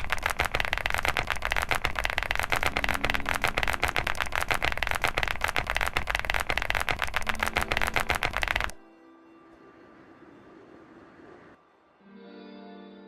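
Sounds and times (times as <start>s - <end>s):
fast keyboard typing: 0.0s - 8.8s.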